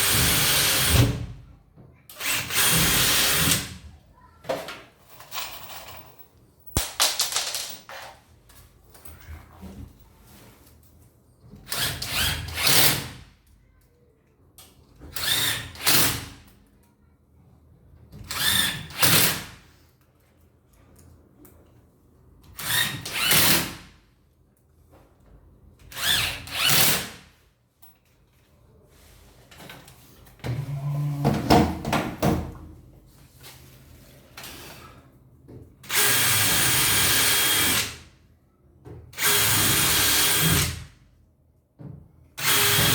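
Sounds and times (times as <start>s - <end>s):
electric drill driving screws: 0.0s - 1.0s, 2.2s - 3.7s, 35.9s - 37.9s, 39.2s - 40.8s, 42.4s - 42.9s.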